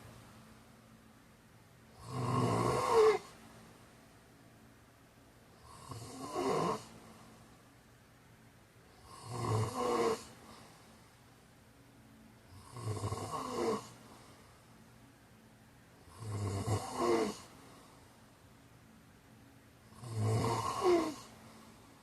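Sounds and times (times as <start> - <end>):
man snoring: 2.0 - 3.4, 5.6 - 7.0, 9.0 - 10.6, 12.5 - 14.0, 16.0 - 17.5, 19.9 - 21.3.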